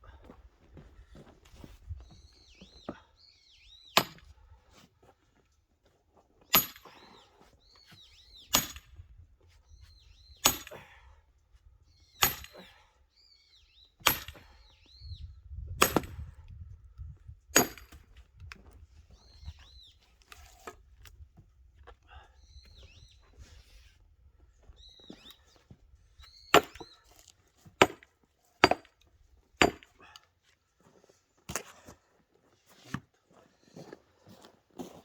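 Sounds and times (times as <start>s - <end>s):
axe chopping wood: 4.0s - 4.2s, 12.2s - 12.6s, 14.0s - 14.4s, 15.8s - 16.2s, 17.6s - 18.0s, 26.6s - 26.9s, 27.8s - 29.0s, 29.6s - 29.9s, 31.5s - 31.8s
small bird chirping: 7.0s - 8.7s, 13.2s - 15.6s, 19.1s - 20.1s, 24.7s - 27.2s.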